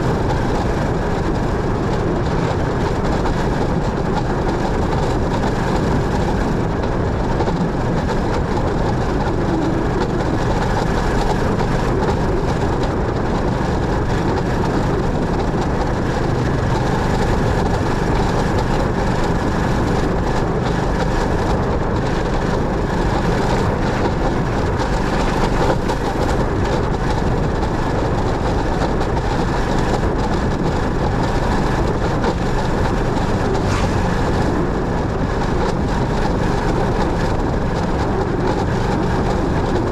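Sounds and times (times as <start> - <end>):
motorcycle engine: 0.0 - 39.9
road noise: 0.0 - 39.9.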